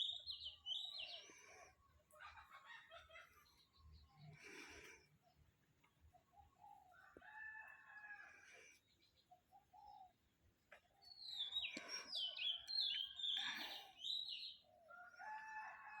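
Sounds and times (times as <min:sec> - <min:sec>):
rooster crowing: 0:07.0 - 0:08.3, 0:15.0 - 0:16.0.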